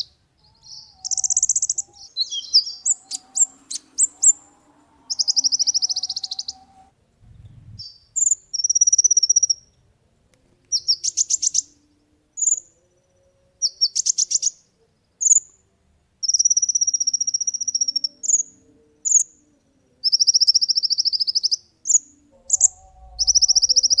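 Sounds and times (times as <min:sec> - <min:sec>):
bird singing high-pitched trills: 0:00.6 - 0:06.9.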